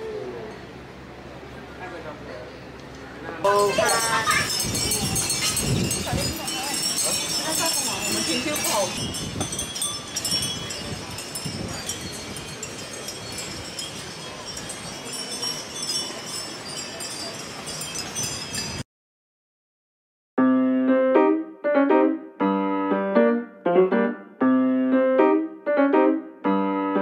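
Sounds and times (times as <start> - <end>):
steady background noise: 0.0 - 18.3
solo piano music: 20.4 - 27.0.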